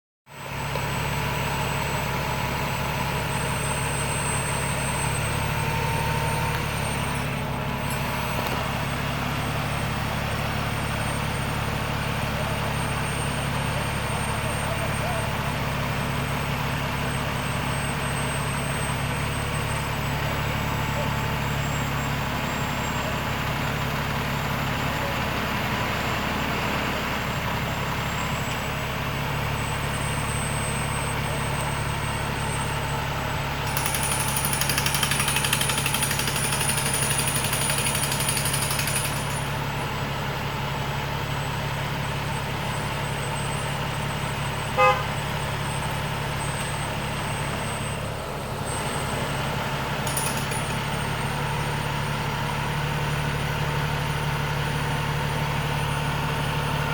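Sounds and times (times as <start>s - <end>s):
crane engine humming: 0.4s - 56.9s
loud horn toot: 44.7s - 45.3s.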